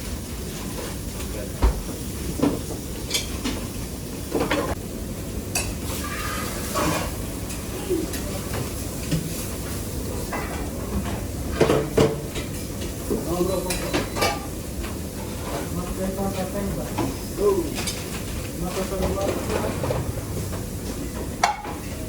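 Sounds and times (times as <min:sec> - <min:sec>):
pots and pans knocking: 0:11.6 - 0:12.4, 0:19.0 - 0:21.9.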